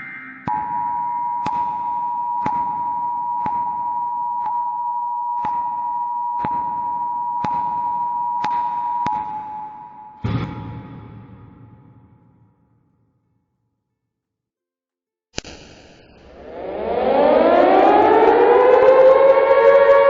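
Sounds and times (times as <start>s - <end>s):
sharp clicks: 15.4s - 16.3s
steady electronic tone: 15.6s - 20.0s.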